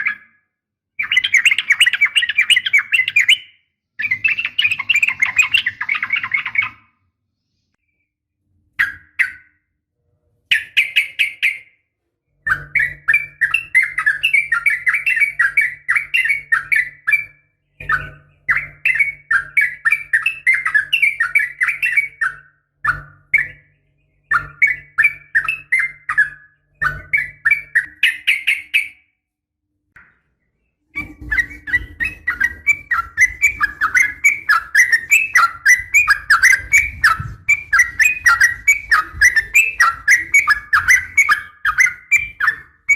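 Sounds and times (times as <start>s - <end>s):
bulbul chattering chirps: 31.0s - 42.9s.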